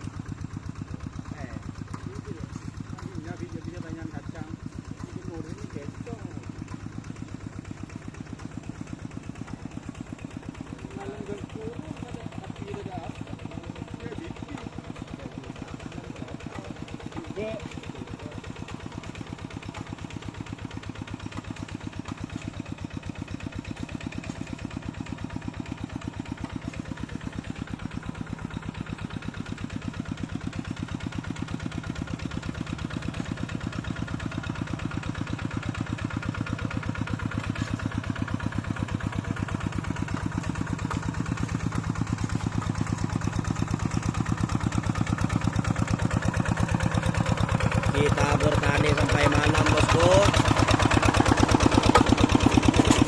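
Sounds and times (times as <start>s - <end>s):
tractor engine running: 0.0s - 53.0s.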